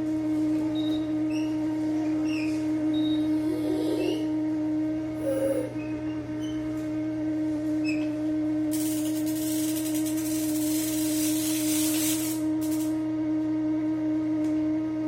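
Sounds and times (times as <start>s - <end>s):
washing machine spin humming: 0.0s - 15.0s
hiss: 8.7s - 13.0s.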